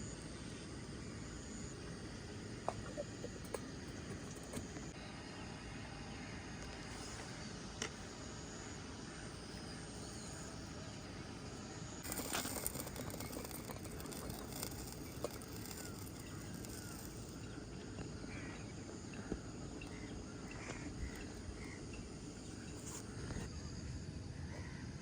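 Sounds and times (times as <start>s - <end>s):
faint bird chirps: 0.0s - 7.5s
rustling hissing noise: 12.0s - 17.7s.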